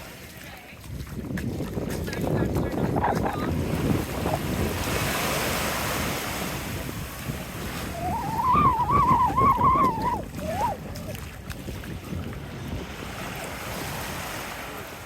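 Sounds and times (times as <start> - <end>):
small waves washing on sand: 0.0 - 15.0
wind on microphone: 0.0 - 15.0
high wavering call: 7.8 - 10.9.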